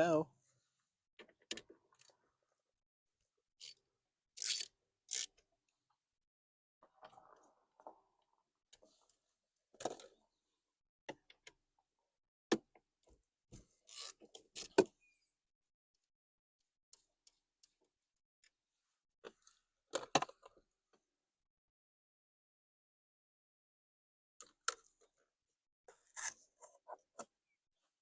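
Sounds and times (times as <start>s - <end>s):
hand tool clicks and scrapes: 4.4s - 5.4s.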